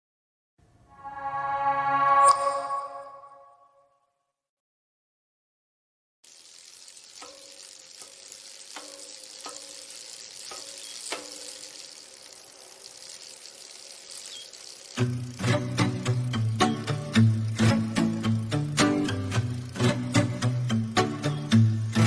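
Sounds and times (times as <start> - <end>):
shower water spraying: 6.2 - 22.0.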